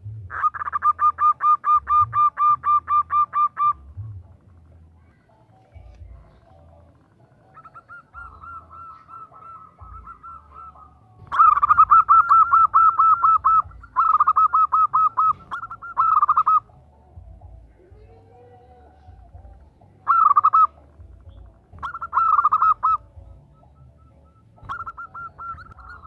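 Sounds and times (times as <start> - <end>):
dove trilling call: 0.0 - 26.0.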